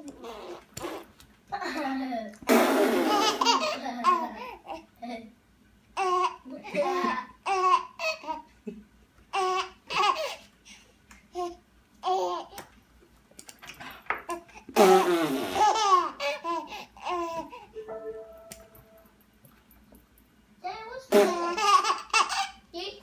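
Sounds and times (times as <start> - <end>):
baby laughing and babbling: 3.1 - 5.2, 11.4 - 12.6, 21.0 - 22.6.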